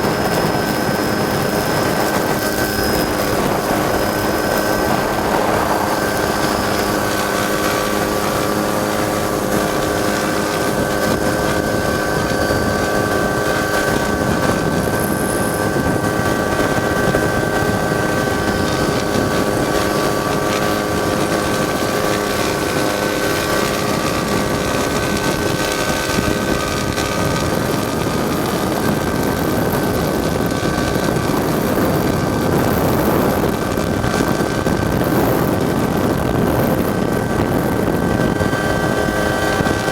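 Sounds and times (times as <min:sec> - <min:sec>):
helicopter turbine and rotor: 0:00.0 - 0:39.9.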